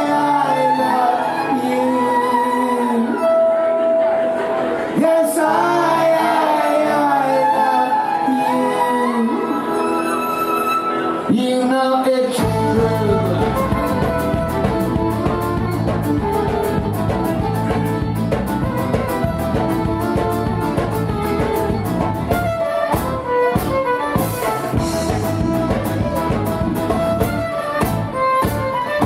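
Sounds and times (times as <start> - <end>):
fiddle melody: 0.0 - 29.0
folk-rock band playing: 0.0 - 29.0
steady drum beat: 12.4 - 29.0.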